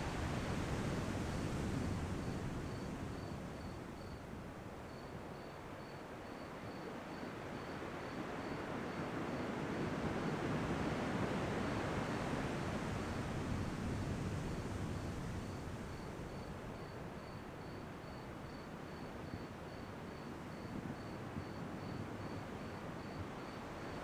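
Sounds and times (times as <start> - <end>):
ocean surf washing: 0.0 - 4.5, 9.8 - 16.8
cricket chirping: 0.8 - 4.3, 4.9 - 10.4, 13.0 - 24.0.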